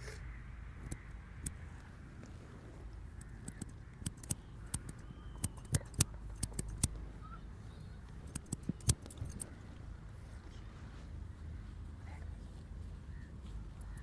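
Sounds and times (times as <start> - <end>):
scissors snipping: 0.8 - 1.6, 3.2 - 6.9, 8.3 - 9.4.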